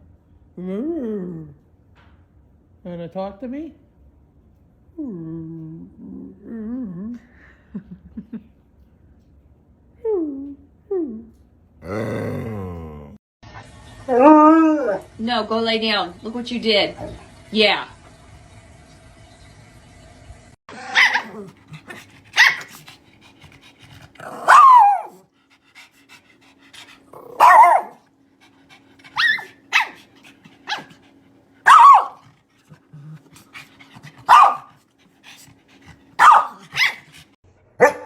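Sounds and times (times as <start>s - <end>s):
dog barking and yowling: 20.7s - 23.0s, 24.1s - 25.2s, 27.0s - 28.1s, 29.1s - 32.3s, 34.0s - 34.8s, 36.1s - 38.0s.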